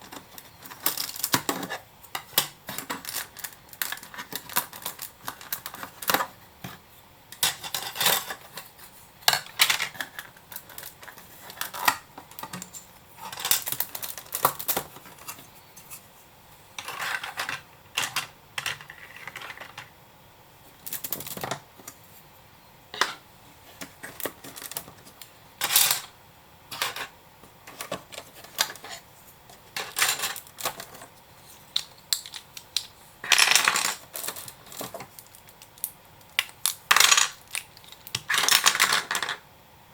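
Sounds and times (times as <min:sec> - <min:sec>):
plastic bricks clicking and snapping: 0:31.7 - 0:39.4.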